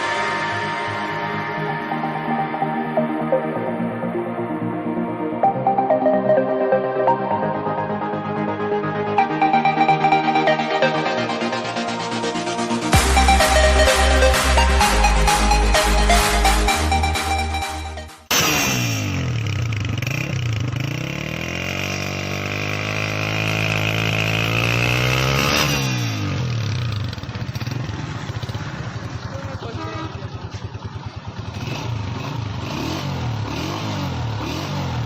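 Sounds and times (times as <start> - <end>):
motorcycle engine revving: 18.3 - 35.0.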